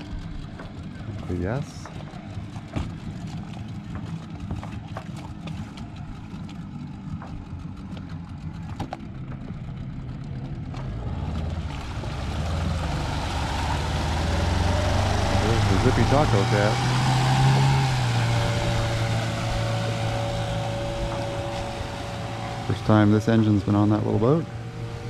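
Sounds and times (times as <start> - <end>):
outboard motor running: 0.0 - 25.0.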